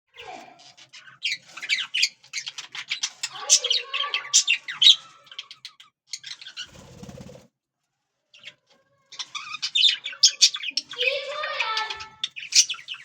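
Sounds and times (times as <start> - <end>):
budgies chirping: 0.2 - 7.4, 8.4 - 13.0
wings fluttering: 6.6 - 7.5.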